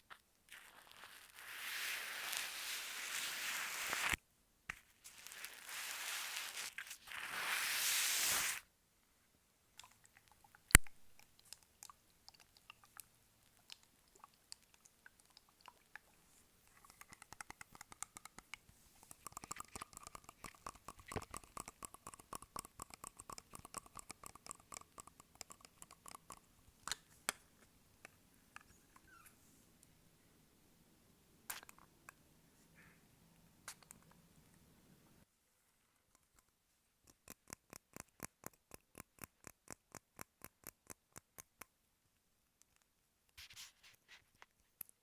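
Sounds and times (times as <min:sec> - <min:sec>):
tape ripping: 0:00.5 - 0:04.2, 0:05.0 - 0:08.6.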